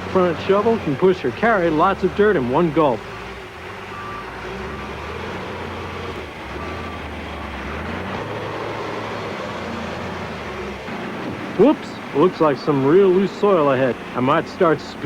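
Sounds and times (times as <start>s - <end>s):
diesel engine working under load: 0.0s - 15.0s
faint high beeps: 3.8s - 5.0s.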